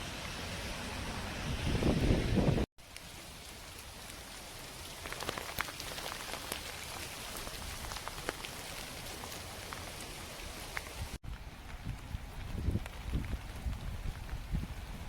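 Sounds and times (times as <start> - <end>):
rain falling: 0.0 - 15.0
raindrops ticking: 2.8 - 14.8.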